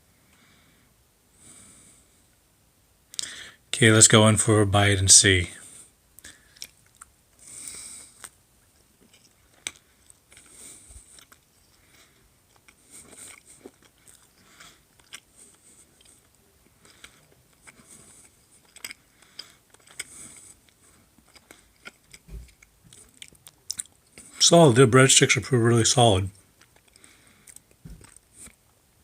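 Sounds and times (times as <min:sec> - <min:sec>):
person chewing bread: 0:06.2 - 0:24.4, 0:26.4 - 0:29.0
small clicks and crunches: 0:09.0 - 0:24.4.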